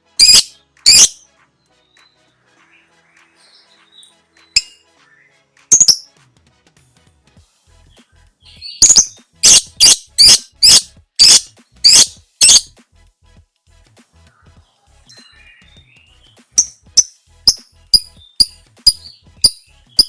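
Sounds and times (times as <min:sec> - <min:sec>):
lovebird screeching: 0:00.2 - 0:01.2, 0:08.8 - 0:12.7.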